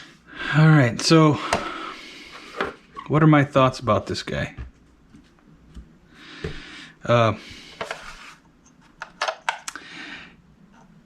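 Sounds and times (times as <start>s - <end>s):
soft breathy noise: 1.3s - 2.7s, 6.1s - 8.4s.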